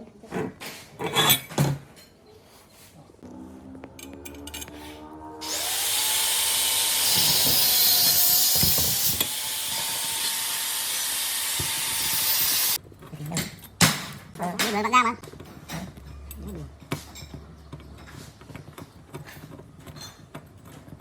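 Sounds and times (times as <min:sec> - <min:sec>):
power tool cutting metal: 0:04.0 - 0:12.8.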